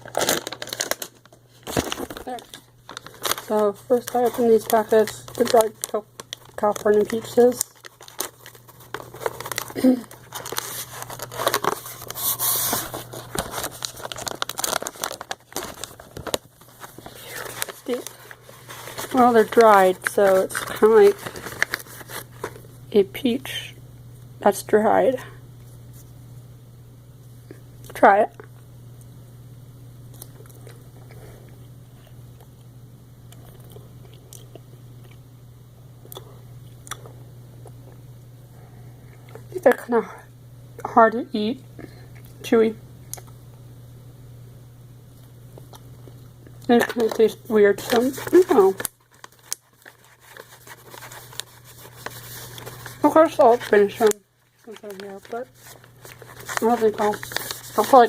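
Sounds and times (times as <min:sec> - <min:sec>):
package ripping: 0:00.0 - 0:22.6, 0:47.8 - 0:58.0
snack package crinkling: 0:00.0 - 0:22.7, 0:45.2 - 0:58.0
steady low hum: 0:00.0 - 0:58.0.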